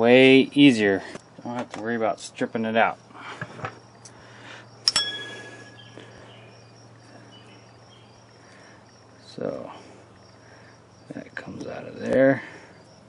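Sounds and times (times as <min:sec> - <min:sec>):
faint steady hum: 0:00.0 - 0:13.0
metal clink: 0:04.8 - 0:06.0.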